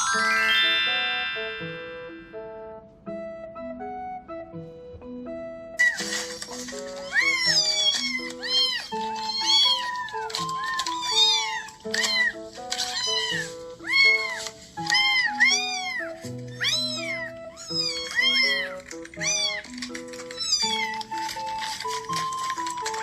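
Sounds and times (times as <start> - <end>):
melodic background music: 0.0 - 23.0
kitten meowing: 7.0 - 21.4.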